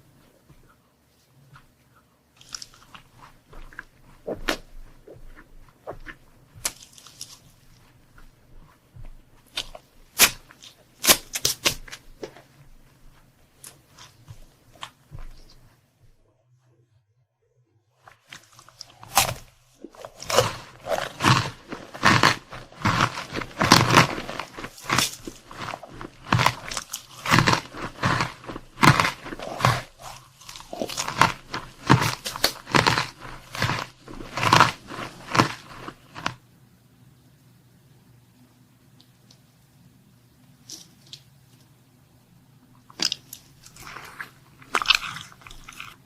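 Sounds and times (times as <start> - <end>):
chewing crunchy food: 2.4 - 12.8, 18.1 - 36.4, 42.8 - 46.0.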